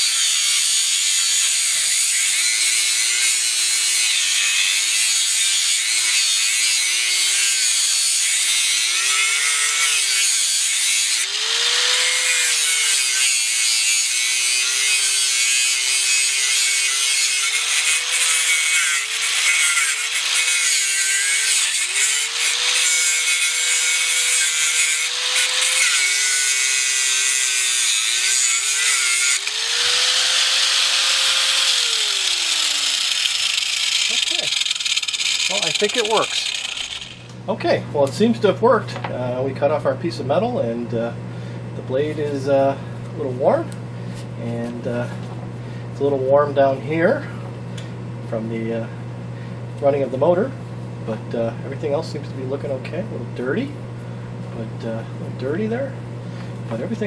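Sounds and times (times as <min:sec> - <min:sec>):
angle grinder cutting metal: 0:00.0 - 0:37.4.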